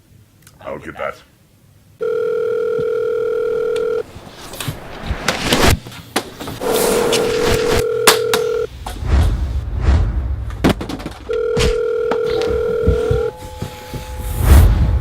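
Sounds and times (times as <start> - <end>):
telephone ringing: 2.0 - 4.0, 7.2 - 8.7, 11.3 - 13.8.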